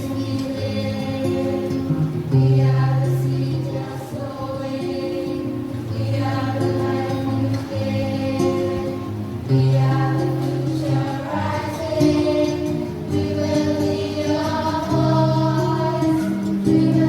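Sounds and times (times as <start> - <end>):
church choir singing: 0.0 - 17.0.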